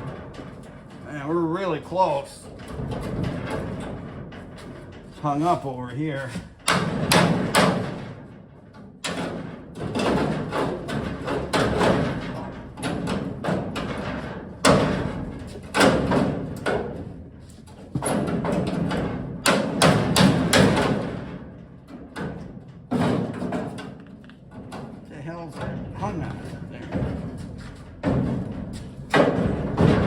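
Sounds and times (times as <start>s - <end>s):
sheet metal banging and scraping: 0.0s - 30.0s.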